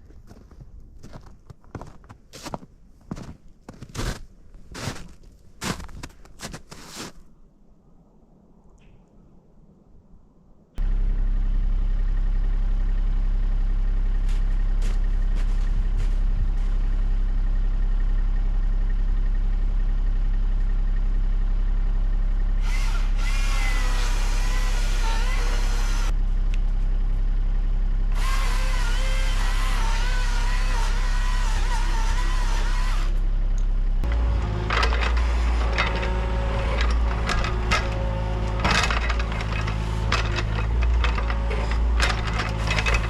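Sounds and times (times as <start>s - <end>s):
chainsaw cutting wood: 28.2s - 33.2s.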